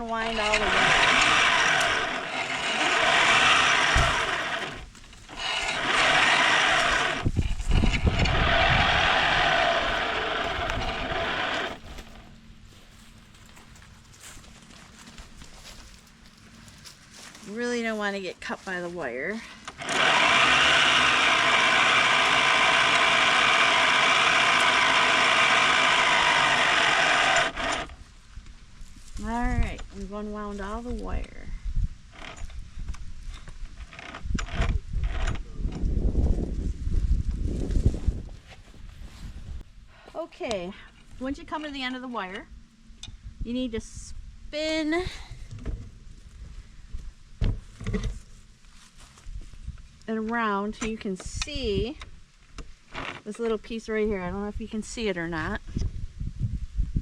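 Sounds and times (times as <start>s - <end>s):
winch grinding whir: 0.0s - 12.4s, 19.5s - 28.0s, 32.1s - 32.6s, 33.4s - 35.8s.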